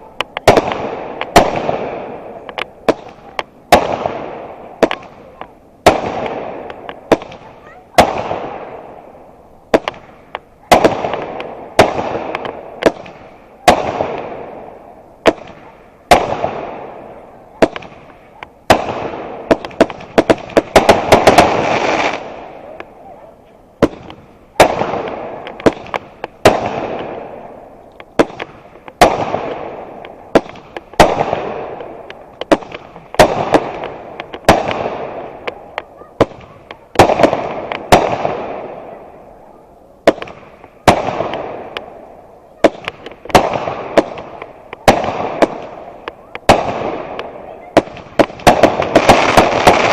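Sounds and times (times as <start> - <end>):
fireworks banging: 0.0 - 49.9.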